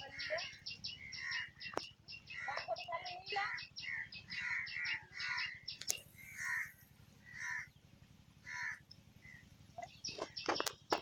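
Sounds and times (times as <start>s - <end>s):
crow cawing: 0.0s - 1.7s, 2.3s - 7.8s, 8.4s - 9.4s.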